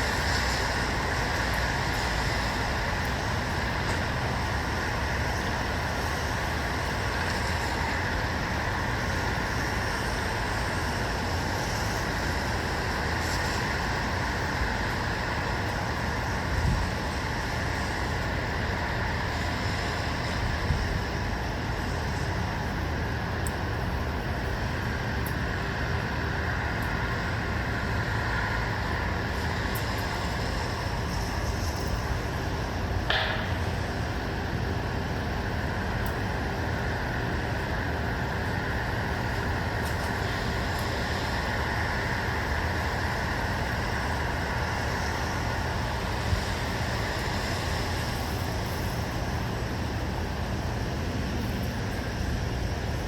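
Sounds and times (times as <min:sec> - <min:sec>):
distant road traffic hum: 0:00.0 - 0:53.0
faint ticks: 0:23.4 - 0:23.6.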